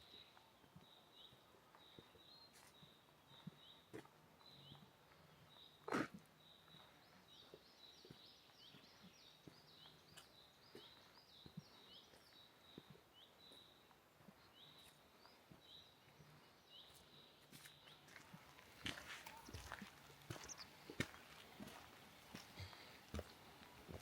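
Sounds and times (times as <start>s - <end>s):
faint high bird chirps: 14.5s - 20.8s.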